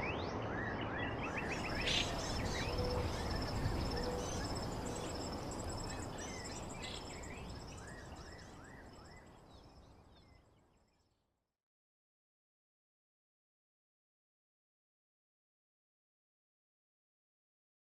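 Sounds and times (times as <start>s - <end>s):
insects trilling: 1.5s - 8.1s.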